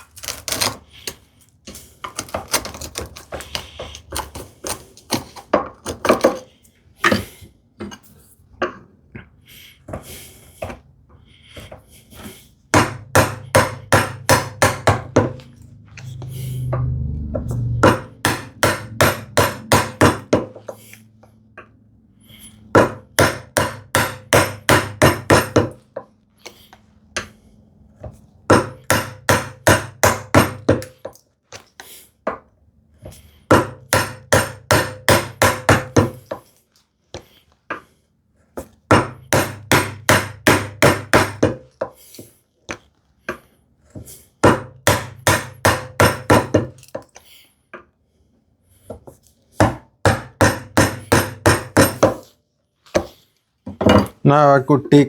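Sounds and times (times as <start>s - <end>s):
chisel chopping into wood: 2.0s - 6.4s, 12.7s - 15.5s, 17.8s - 20.6s, 22.7s - 25.8s, 28.5s - 31.2s, 33.5s - 36.3s, 38.9s - 41.7s, 44.4s - 46.8s, 49.6s - 52.2s.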